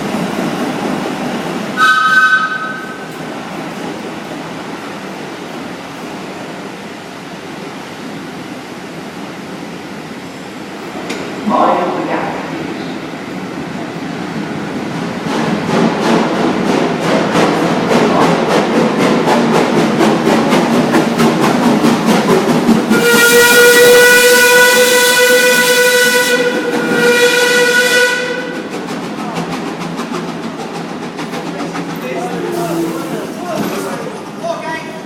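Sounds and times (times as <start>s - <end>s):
train passing with rhythmic beat: 0.0s - 35.0s
locomotive whistle: 1.8s - 3.1s, 22.9s - 28.6s.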